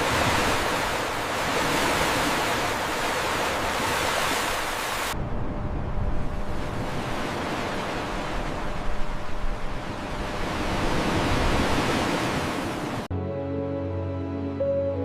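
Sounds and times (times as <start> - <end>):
ocean surf rushing: 0.0 - 13.1
soft music: 13.1 - 15.0.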